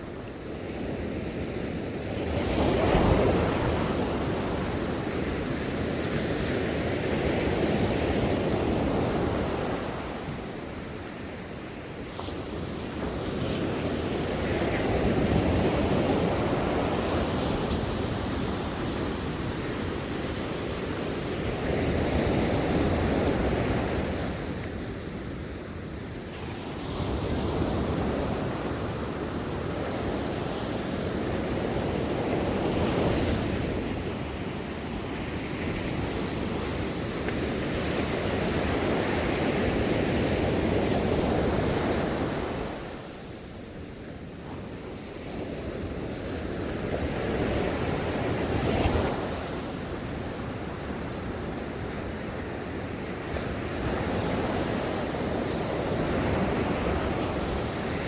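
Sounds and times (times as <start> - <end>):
ocean waves breaking on shore: 26.6 - 58.0.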